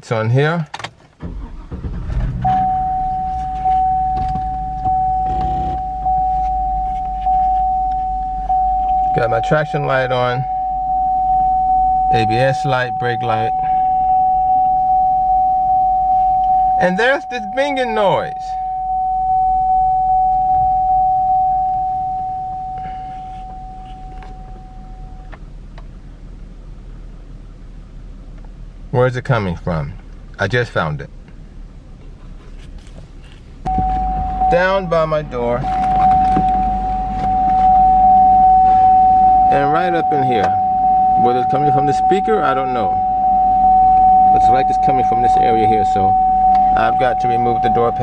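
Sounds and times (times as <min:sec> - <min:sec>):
low steady hum: 0:01.2 - 0:48.0
car warning chime: 0:02.4 - 0:25.4, 0:33.6 - 0:48.0.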